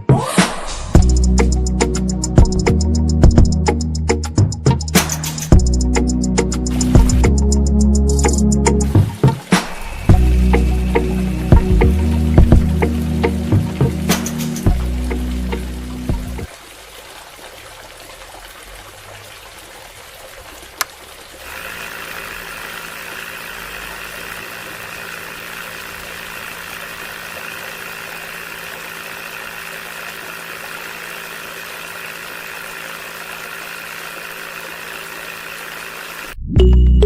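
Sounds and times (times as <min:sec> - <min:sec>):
small electric motor whining: 0:09.4 - 0:16.4, 0:21.4 - 0:36.4.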